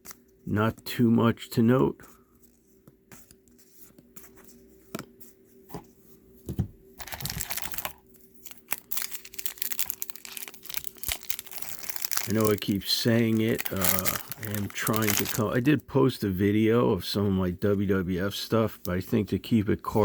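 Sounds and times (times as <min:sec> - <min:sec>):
card pack wrapper tearing and crinkling: 0:07.0 - 0:15.7.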